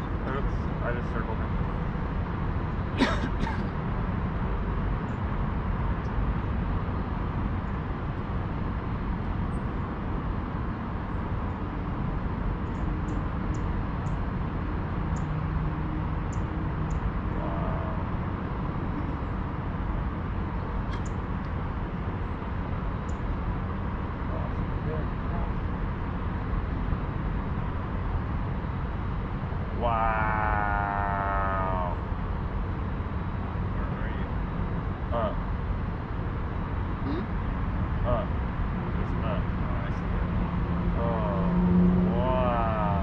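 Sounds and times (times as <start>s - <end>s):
low rumble with hiss: 0.0s - 43.0s.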